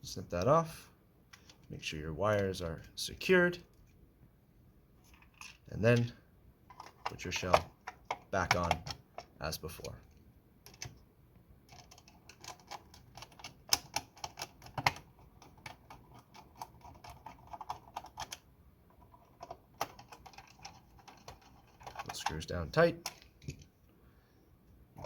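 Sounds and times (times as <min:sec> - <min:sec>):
plastic parts clicking and rattling: 0:01.3 - 0:01.7, 0:05.1 - 0:06.1, 0:06.7 - 0:11.0, 0:11.7 - 0:23.7.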